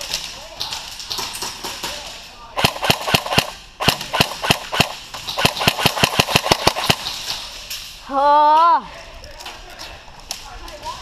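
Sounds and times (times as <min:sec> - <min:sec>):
airsoft guns firing: 0:00.0 - 0:07.6.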